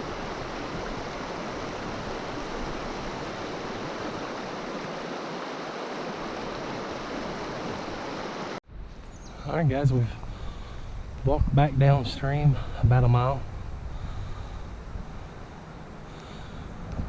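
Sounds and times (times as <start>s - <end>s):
stream water rushing over rocks: 0.0s - 8.6s.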